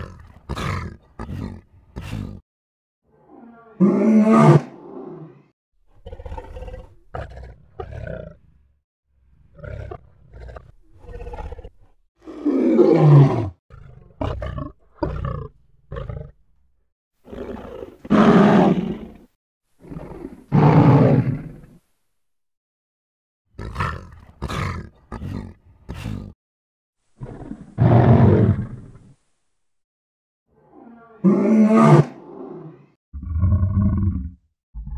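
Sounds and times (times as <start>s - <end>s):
lion grunting: 0.0s - 2.4s
lion roaring: 3.1s - 8.4s, 9.5s - 16.4s, 30.6s - 34.9s.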